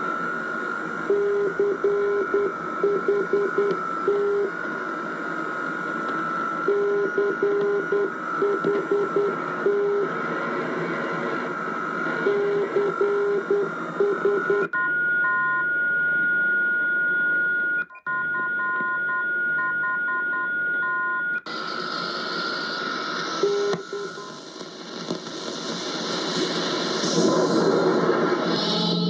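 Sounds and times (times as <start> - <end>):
radio static and hiss: 0.0 - 14.7, 21.4 - 29.0.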